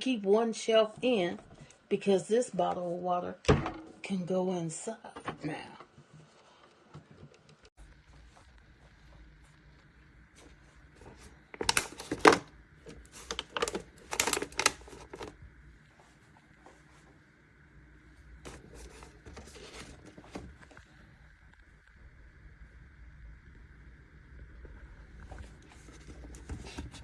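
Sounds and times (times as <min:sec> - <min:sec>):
plastic clatter and knocks: 0:11.6 - 0:15.3, 0:18.5 - 0:20.7.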